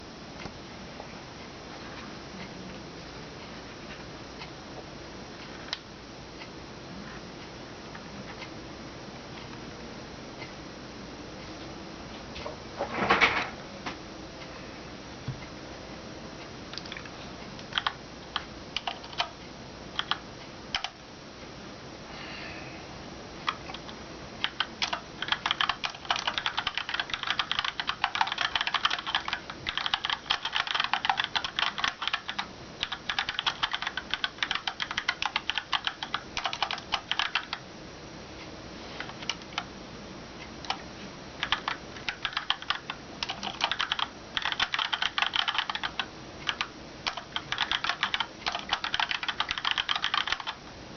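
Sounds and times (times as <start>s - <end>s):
mechanical keyboard typing: 16.7s - 19.4s, 20.0s - 21.0s, 23.4s - 37.6s, 41.4s - 50.6s.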